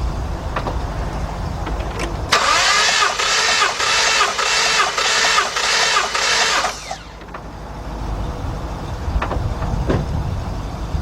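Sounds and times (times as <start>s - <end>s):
starter motor cranking engine: 0.6s - 8.2s.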